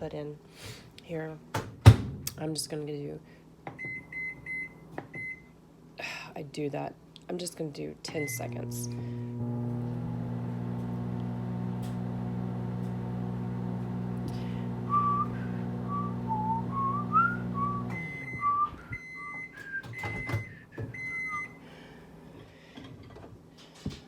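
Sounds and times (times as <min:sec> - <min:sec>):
microwave beeps: 0:03.8 - 0:05.5, 0:08.1 - 0:10.4, 0:14.7 - 0:21.6
microwave oven humming: 0:08.1 - 0:22.4
person whistling a tune: 0:14.9 - 0:21.4.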